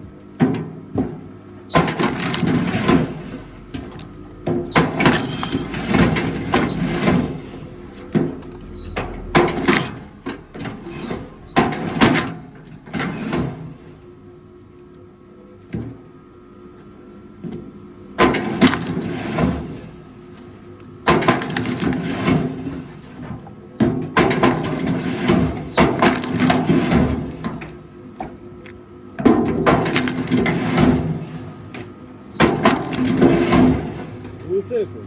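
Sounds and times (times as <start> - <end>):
high squeals: 8.7 - 11.6, 12.2 - 13.6.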